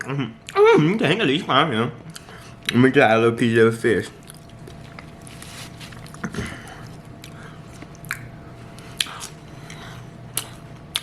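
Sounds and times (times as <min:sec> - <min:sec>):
low steady hum: 0:00.0 - 0:11.0
person chewing food: 0:04.1 - 0:11.0.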